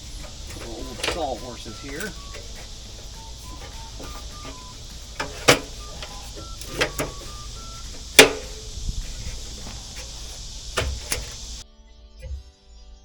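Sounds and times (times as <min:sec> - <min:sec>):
wood knocks and clunks: 0:00.0 - 0:11.6.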